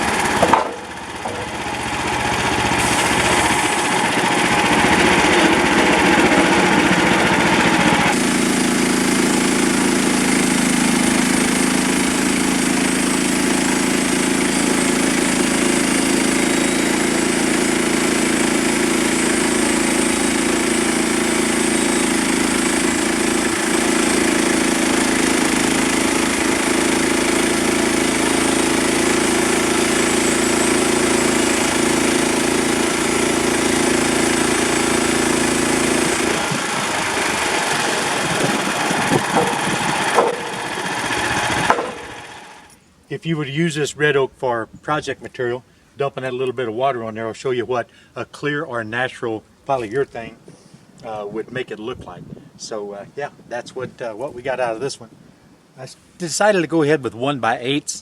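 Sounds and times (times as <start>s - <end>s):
sawmill engine running: 0.0s - 42.8s.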